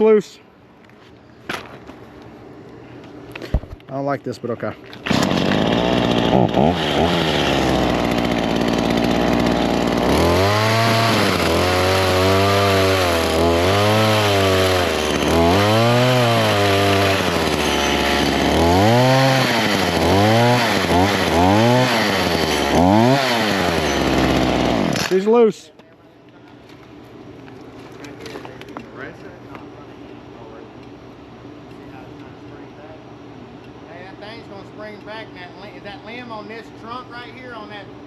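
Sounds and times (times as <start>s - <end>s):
chainsaw revving: 5.0s - 25.4s.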